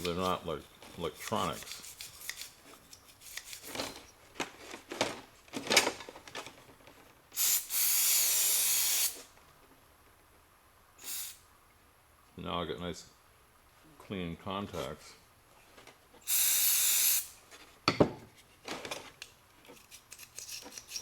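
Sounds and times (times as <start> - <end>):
spray can hissing: 7.4 - 9.3, 11.0 - 11.4, 16.3 - 17.4.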